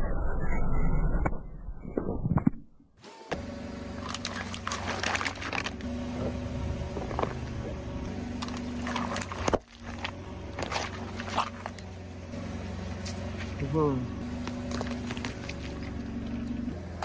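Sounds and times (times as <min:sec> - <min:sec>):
car engine idling: 0:03.3 - 0:17.0
objects crunching under tyre: 0:04.0 - 0:12.1, 0:12.8 - 0:17.0.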